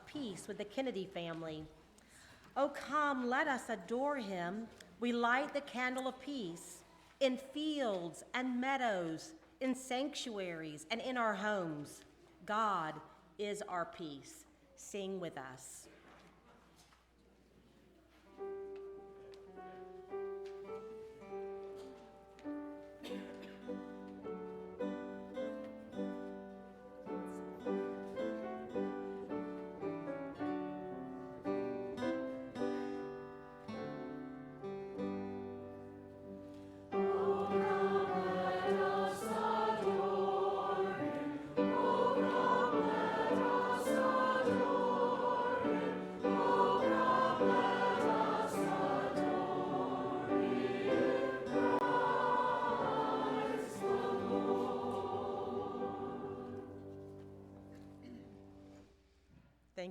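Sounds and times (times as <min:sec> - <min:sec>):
slow hymn on piano: 0:18.4 - 0:58.8
congregation and choir singing: 0:19.7 - 0:34.2, 0:36.6 - 0:58.0.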